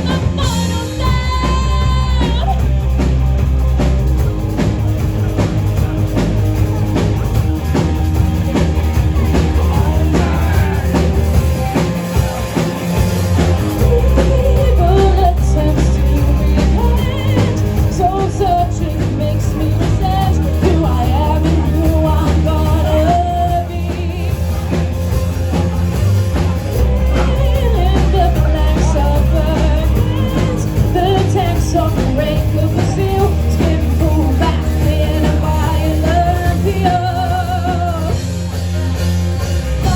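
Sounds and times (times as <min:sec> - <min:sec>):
drum kit: 0:00.0 - 0:39.9
electric bass: 0:00.0 - 0:39.9
electric guitar: 0:00.0 - 0:39.9
person singing: 0:08.8 - 0:25.0, 0:26.7 - 0:38.9.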